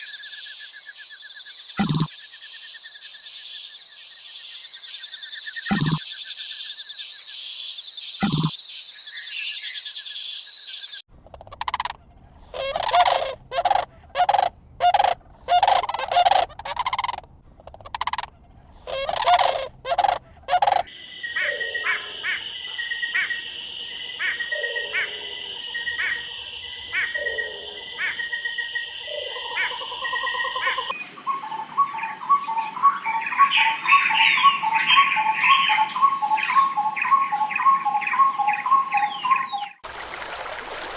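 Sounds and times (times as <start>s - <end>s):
bird chirping trill: 5.6s - 6.1s, 10.9s - 39.8s
fast pulsed bird chirping: 5.6s - 6.2s, 11.2s - 30.9s
harsh bird calls: 9.2s - 23.5s.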